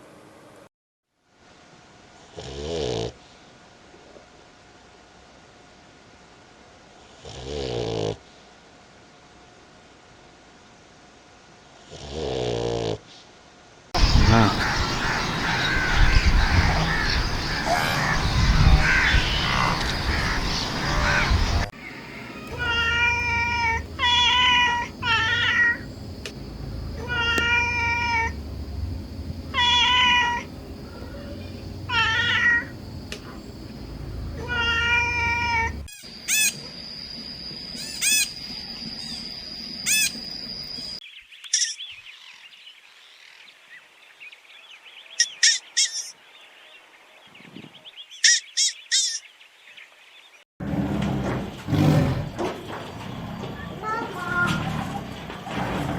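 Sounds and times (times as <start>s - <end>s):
high chirping calls: 14.0s - 26.1s, 29.5s - 42.5s, 44.3s - 46.2s, 47.4s - 49.8s
cat meowing: 21.8s - 25.9s, 27.0s - 28.4s, 29.5s - 30.5s, 31.9s - 32.7s, 34.4s - 35.9s.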